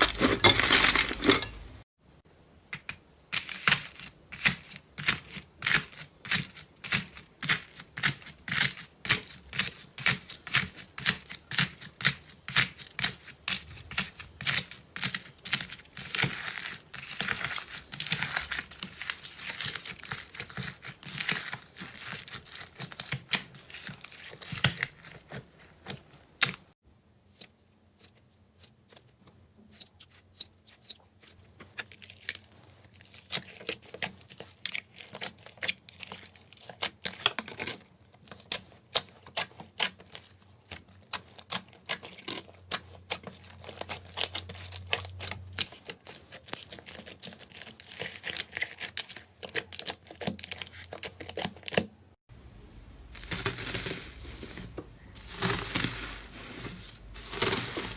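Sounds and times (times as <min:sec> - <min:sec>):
slime handling sounds: 0:52.8 - 0:57.9.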